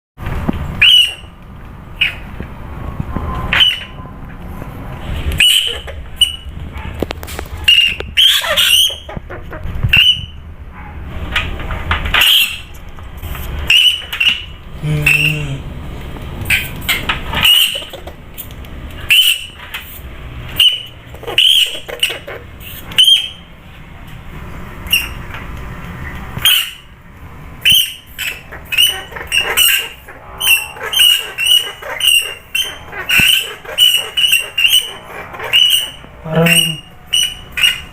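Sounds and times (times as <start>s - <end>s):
rodent squeaking: 0.8s - 1.3s, 3.5s - 4.0s, 5.3s - 6.5s, 7.6s - 10.4s, 13.6s - 15.6s, 16.4s - 23.5s, 24.8s - 25.2s, 26.4s - 26.9s, 27.6s - 37.9s.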